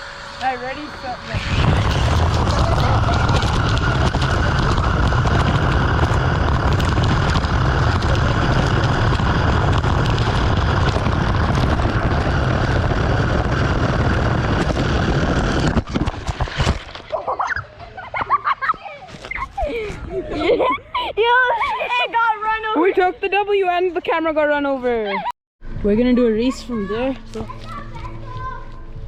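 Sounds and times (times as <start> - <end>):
rc car motor and wind rush: 0.0 - 17.1.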